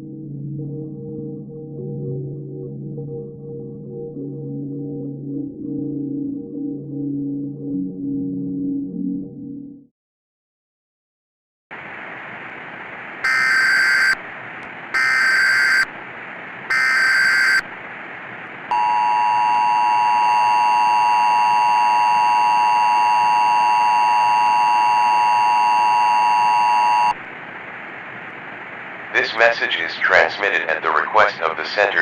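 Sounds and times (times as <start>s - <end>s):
screeching data bursts: 13.2s - 14.2s, 15.0s - 15.9s, 16.7s - 17.6s
two-tone alert signal: 13.3s - 14.2s, 15.0s - 15.9s, 16.7s - 17.6s, 18.7s - 27.1s
static hiss: 27.1s - 32.0s.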